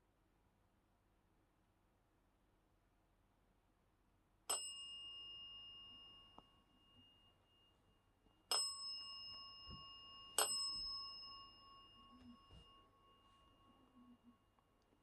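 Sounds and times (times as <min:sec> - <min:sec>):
small metal bell ringing: 0:04.5 - 0:14.6.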